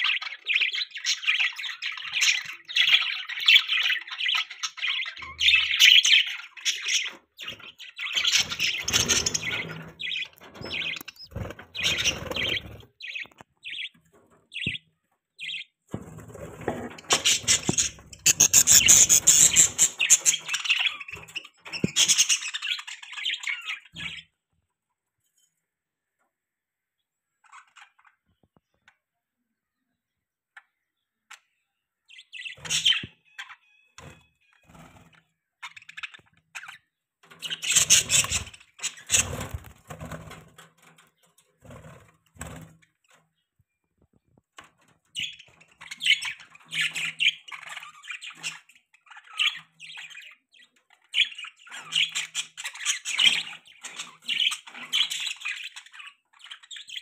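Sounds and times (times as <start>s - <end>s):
budgerigars chirping: 0.0s - 14.0s, 16.7s - 24.2s, 37.4s - 39.6s.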